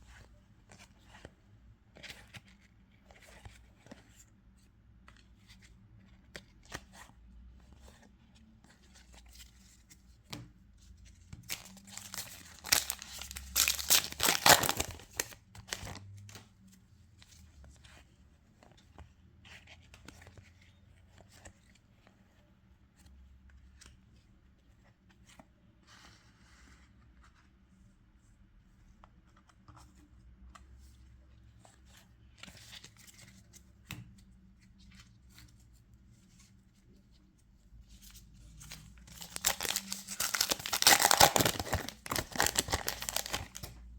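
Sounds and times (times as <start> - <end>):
wrapper being torn open: 11.5 - 16.1, 39.1 - 43.7
wrapper rustling: 11.5 - 16.2, 39.1 - 43.7.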